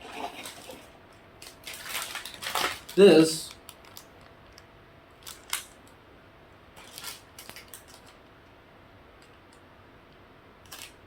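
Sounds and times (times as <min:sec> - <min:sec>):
plastic packaging crinkling: 0:00.0 - 0:04.3, 0:05.1 - 0:05.9, 0:06.8 - 0:08.2, 0:10.7 - 0:11.0.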